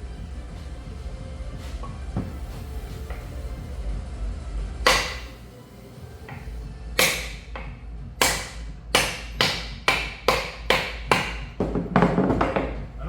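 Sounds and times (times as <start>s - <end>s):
hammer striking wood block: 4.8s - 5.4s, 6.3s - 12.9s.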